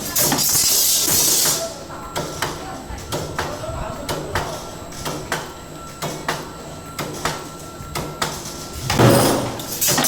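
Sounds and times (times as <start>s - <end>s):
machine hum: 1.6s - 10.0s.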